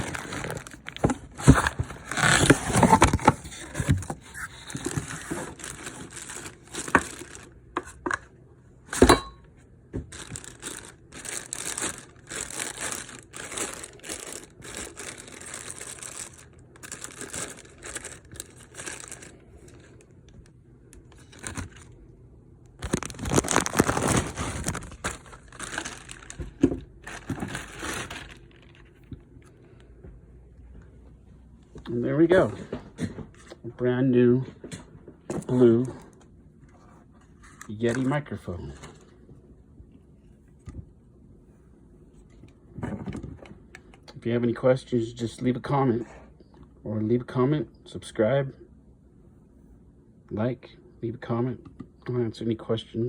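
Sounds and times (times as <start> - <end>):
packaging rustling and tearing: 0.0 - 7.6, 10.1 - 20.1, 21.0 - 22.0, 22.8 - 29.5.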